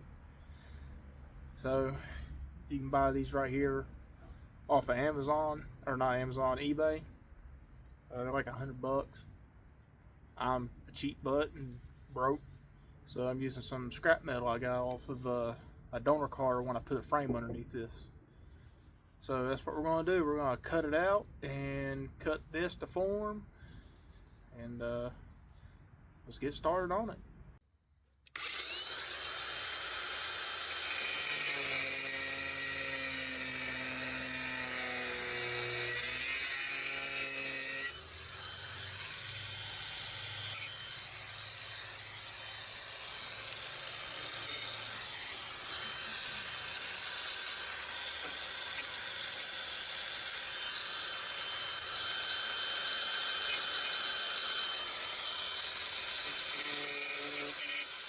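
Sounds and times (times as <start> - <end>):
power tool cutting sheet metal: 28.3 - 58.0.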